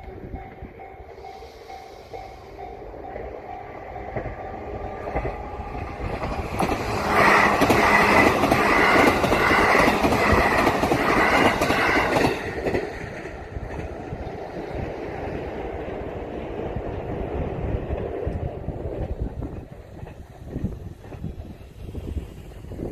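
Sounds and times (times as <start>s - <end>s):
faint crossing warning bell: 0.0s - 5.7s
electric train passing: 0.0s - 22.9s.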